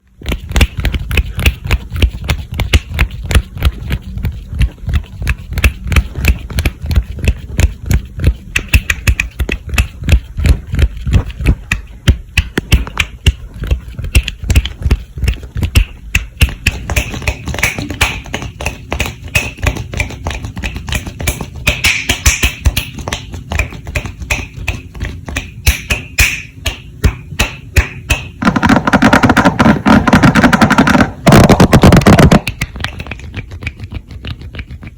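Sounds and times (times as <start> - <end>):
continuous rubbing: 0.0 - 21.7, 28.4 - 34.9
hand tapping and stroking: 0.0 - 34.9.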